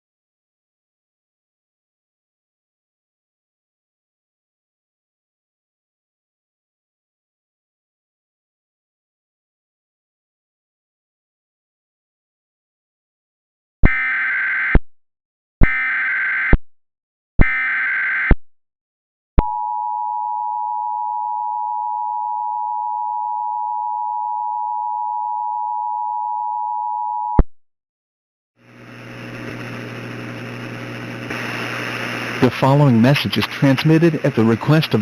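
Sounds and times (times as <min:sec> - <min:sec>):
digital data tone bursts: 0:17.4 - 0:18.4
noisy hum: 0:28.6 - 0:35.0.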